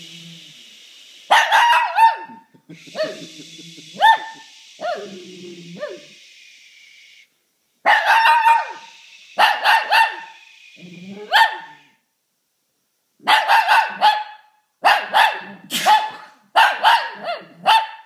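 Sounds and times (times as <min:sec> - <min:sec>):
small dog barking: 0:01.3 - 0:02.4, 0:04.0 - 0:05.1, 0:07.8 - 0:10.4, 0:11.2 - 0:11.9, 0:13.2 - 0:18.0.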